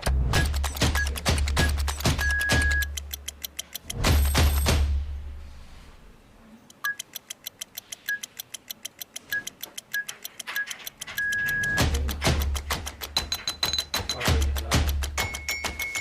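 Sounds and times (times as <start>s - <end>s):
music with ticking beat: 0.0s - 4.8s, 6.7s - 16.0s
short beeps: 2.2s - 2.9s, 9.3s - 11.8s.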